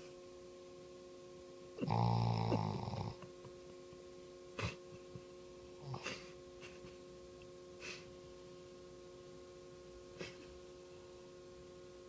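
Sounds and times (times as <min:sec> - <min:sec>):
steady background hum: 0:00.0 - 0:12.0
faint breathy snorts: 0:04.6 - 0:04.8.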